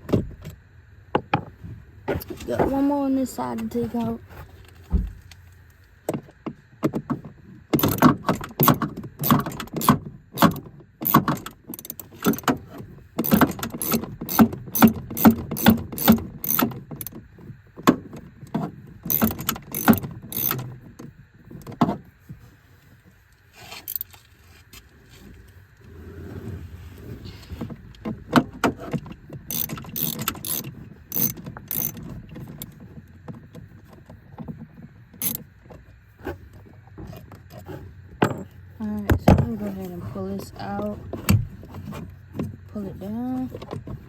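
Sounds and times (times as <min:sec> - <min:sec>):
ratchet wrench clicking: 0:07.8 - 0:12.5, 0:13.2 - 0:17.2, 0:19.1 - 0:20.6, 0:29.5 - 0:32.7, 0:35.2 - 0:35.4.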